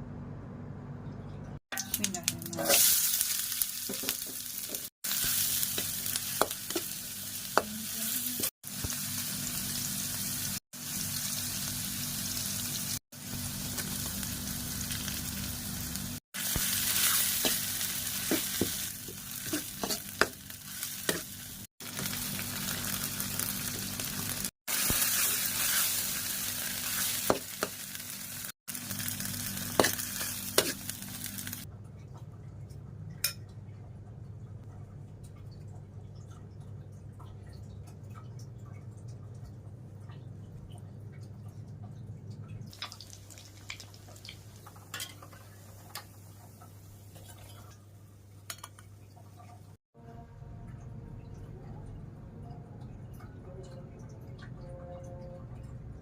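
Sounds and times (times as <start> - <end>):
hot oil sizzling: 1.7 - 31.7, 42.7 - 47.4.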